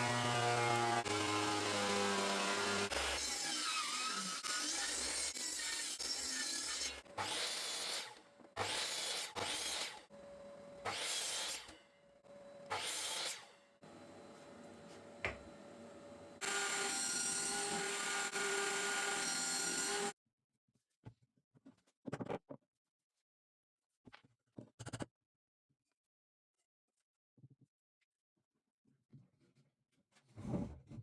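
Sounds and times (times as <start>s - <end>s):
power tools whining: 0.0s - 20.1s.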